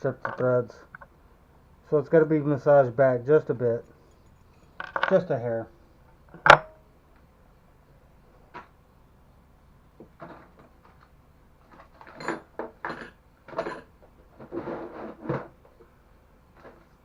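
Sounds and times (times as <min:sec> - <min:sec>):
metal parts clanking: 0:04.7 - 0:05.3, 0:11.7 - 0:13.9.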